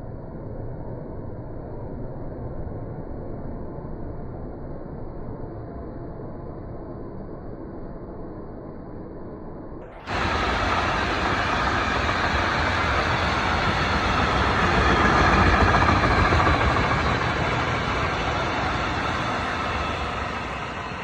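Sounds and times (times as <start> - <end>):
freight train wheels rumbling on rail: 10.0 - 21.0.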